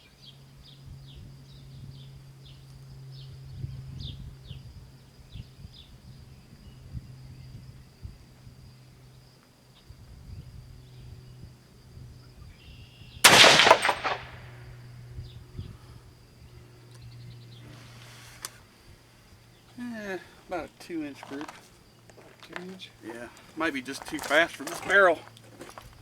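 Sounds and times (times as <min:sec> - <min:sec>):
rifle shot ringing: 0:13.2 - 0:14.6.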